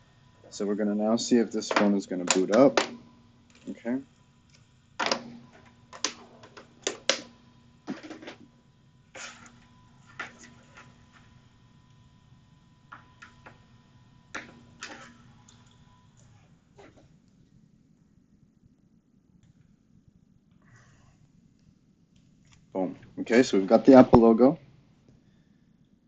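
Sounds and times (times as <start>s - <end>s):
faint steady hum: 0.0s - 26.0s.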